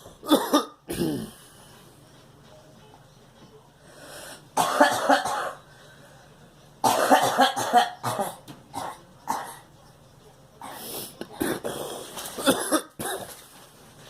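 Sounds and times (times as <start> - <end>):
girl coughing: 0.2 - 1.4, 4.6 - 5.6, 6.8 - 9.6, 12.4 - 13.3.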